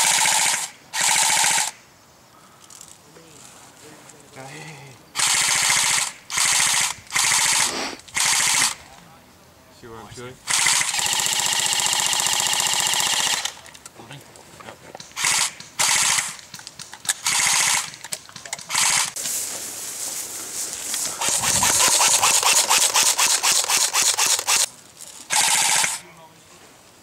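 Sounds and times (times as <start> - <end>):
airsoft guns firing full auto: 0.0 - 1.8, 5.2 - 8.8, 10.5 - 13.6, 15.0 - 19.2, 21.1 - 24.7, 25.3 - 26.0.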